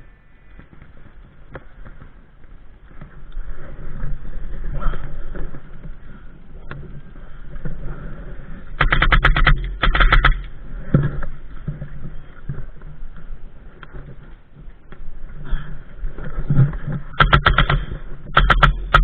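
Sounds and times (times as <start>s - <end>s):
airsoft gun bursts: 8.8s - 10.5s, 17.2s - 19.0s.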